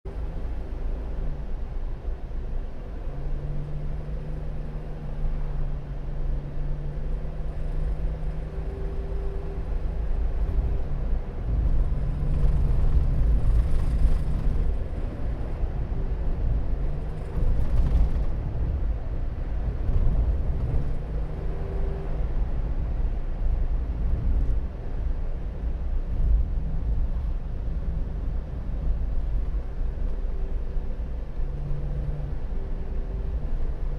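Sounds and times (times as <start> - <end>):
low road rumble: 0.0 - 33.9
van engine running: 0.1 - 33.9.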